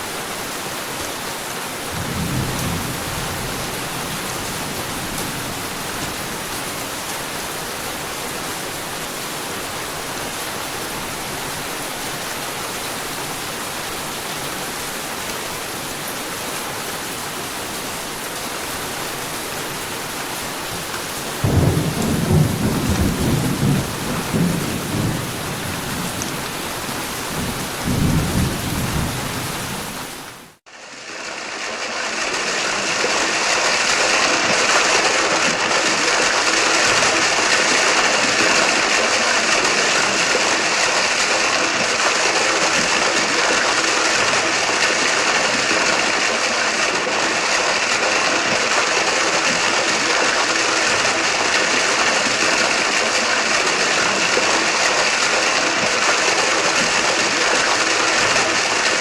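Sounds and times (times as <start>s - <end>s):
steady rain falling: 0.0s - 59.0s
rolling thunder: 2.0s - 6.4s, 21.4s - 26.5s.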